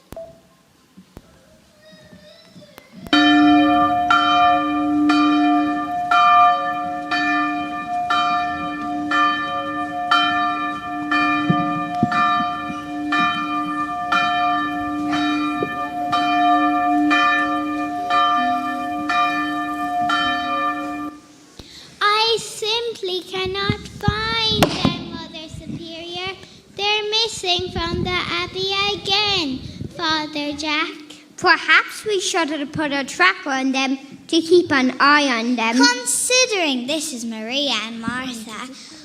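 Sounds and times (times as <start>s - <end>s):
church bell tolling: 3.2s - 21.4s.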